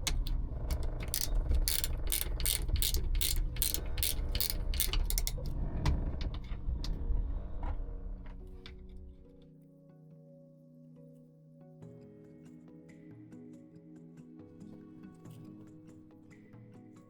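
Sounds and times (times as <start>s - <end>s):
ratchet wrench clicking: 0.0s - 5.6s
steady low hum: 0.0s - 9.4s.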